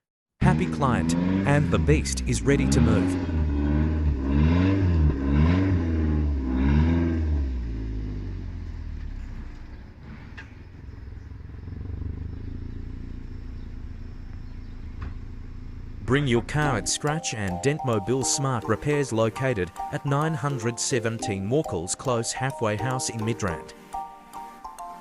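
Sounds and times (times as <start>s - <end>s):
car engine revving: 0.4s - 17.6s.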